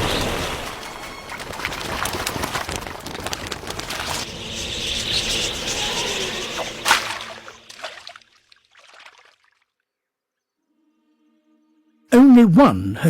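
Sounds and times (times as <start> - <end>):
flock of birds wings rushing: 0.0 - 9.4
sharp wing swish: 3.7 - 8.3.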